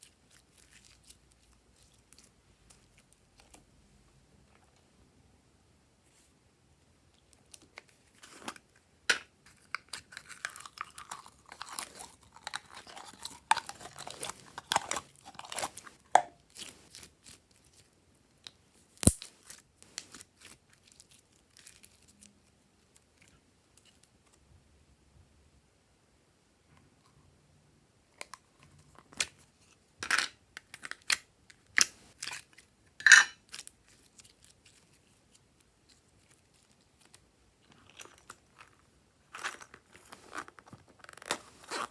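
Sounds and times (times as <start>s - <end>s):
slime crackling and popping: 19.0s - 20.2s.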